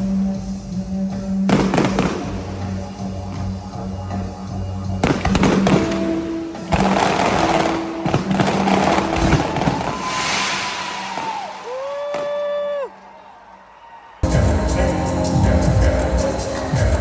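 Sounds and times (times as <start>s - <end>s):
music: 0.0s - 11.5s, 14.2s - 17.0s
fireworks bursting and crackling: 1.5s - 3.6s, 5.0s - 13.0s.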